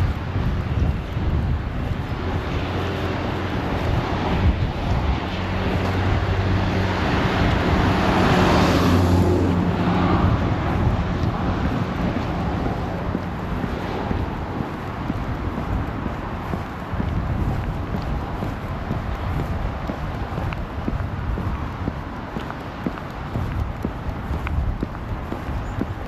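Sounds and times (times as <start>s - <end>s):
car driving past: 5.2s - 19.4s.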